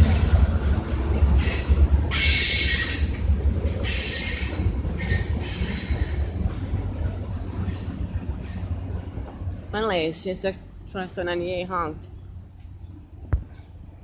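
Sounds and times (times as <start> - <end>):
wheel flanges squealing on rail: 0.0 - 6.6, 7.6 - 8.8
low train rumble: 0.0 - 14.0.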